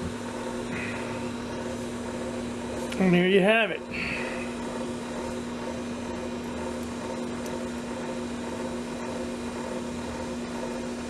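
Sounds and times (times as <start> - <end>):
steady electrical hum with hiss: 0.0 - 11.0.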